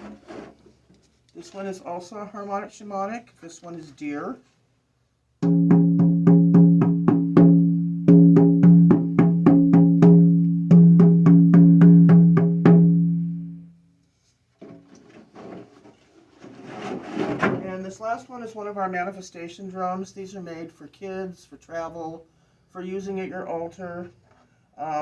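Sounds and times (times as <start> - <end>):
faint handling rustles: 0.0 - 4.8, 14.0 - 18.0.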